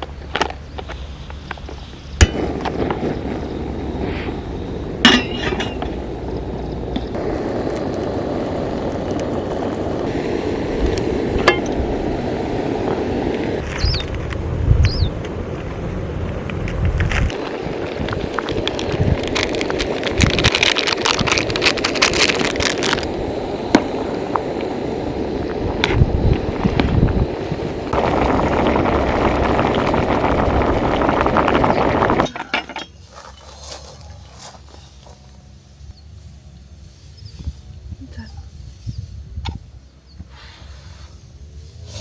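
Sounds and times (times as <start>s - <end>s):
gas stove burner roaring: 2.2s - 13.6s, 22.9s - 32.3s
metal cookware clinking: 5.1s - 5.9s.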